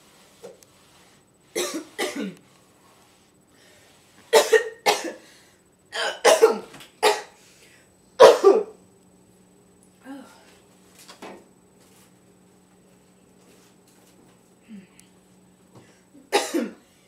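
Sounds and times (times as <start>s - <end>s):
person coughing: 1.6s - 2.4s, 4.3s - 5.2s, 5.9s - 7.4s, 8.2s - 8.8s, 16.2s - 16.9s.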